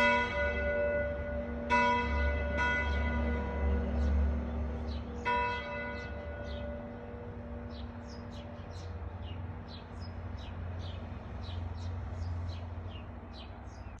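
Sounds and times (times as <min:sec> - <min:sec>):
church bells humming: 0:00.0 - 0:10.9.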